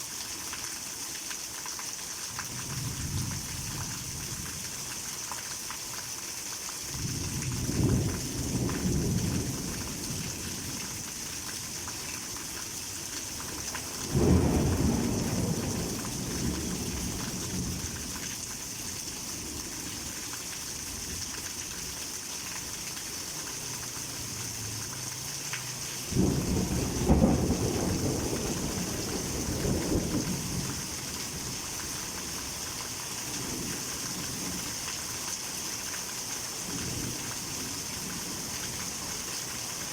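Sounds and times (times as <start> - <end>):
heavy rain hissing: 6.2 - 39.9
thunder rolling: 14.1 - 18.0, 26.1 - 30.8.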